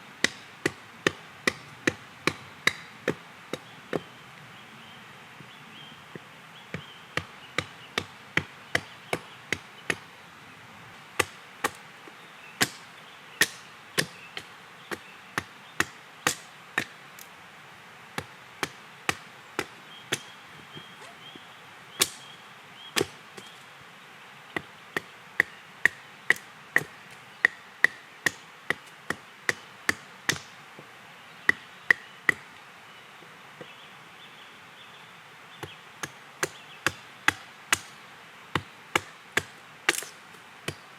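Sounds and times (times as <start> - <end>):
axe chopping wood: 0.2 - 4.1, 6.7 - 10.0, 11.2 - 11.8, 12.6 - 17.0, 18.2 - 20.3, 22.0 - 22.2, 23.0 - 23.5, 24.6 - 30.6, 36.0 - 40.8.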